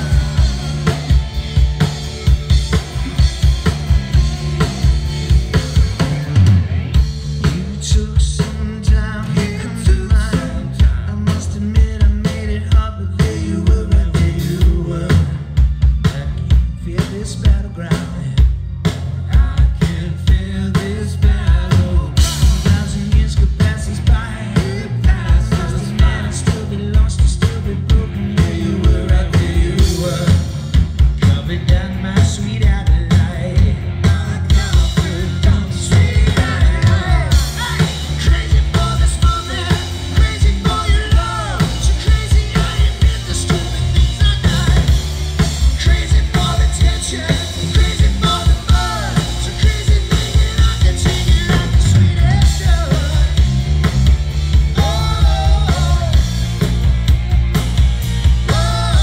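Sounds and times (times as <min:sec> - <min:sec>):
live rock band: 0:00.0 - 0:59.0
person singing: 0:19.2 - 0:30.6, 0:31.2 - 0:45.0, 0:45.7 - 0:53.4, 0:54.7 - 0:56.4, 0:58.4 - 0:59.0.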